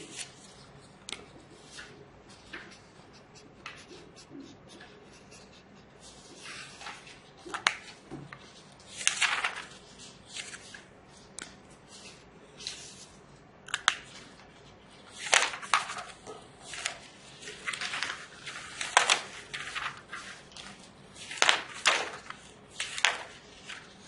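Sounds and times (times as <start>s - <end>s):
paper rustling: 0.0s - 24.0s
marker scratching on paper: 1.6s - 7.3s.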